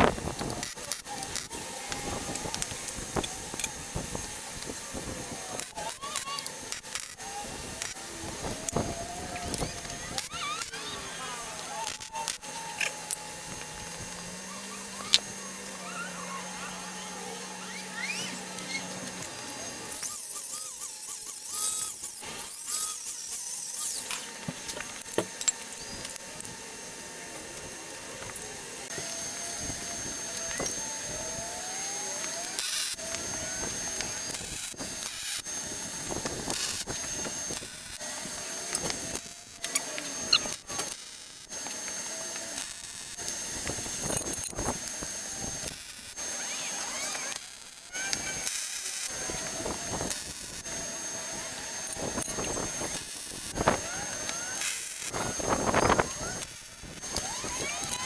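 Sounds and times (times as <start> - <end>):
faint squeals: 0.0 - 24.8, 25.4 - 58.0
power tool whining on metal: 0.0 - 58.0.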